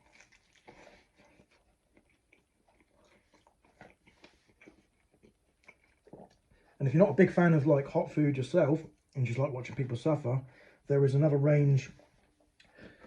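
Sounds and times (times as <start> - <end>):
person chewing food: 0.0 - 6.8, 12.0 - 13.0.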